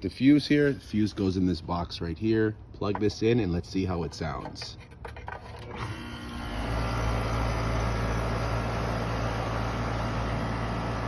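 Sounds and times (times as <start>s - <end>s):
air conditioner running hum: 5.6s - 11.0s.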